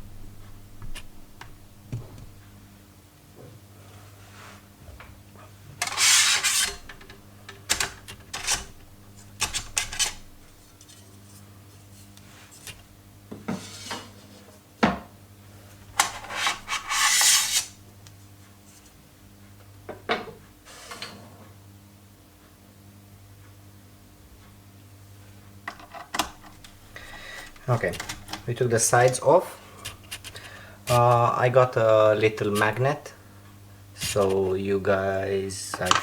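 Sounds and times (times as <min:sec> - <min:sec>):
metal panel scraping: 0:05.8 - 0:07.0, 0:16.1 - 0:17.7
sharp clicks and knocks: 0:27.5 - 0:29.2.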